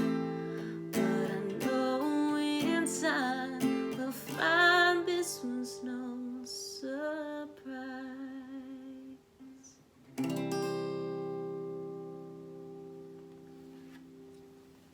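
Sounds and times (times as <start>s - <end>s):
person singing: 0.0s - 9.8s
acoustic guitar: 0.0s - 14.9s.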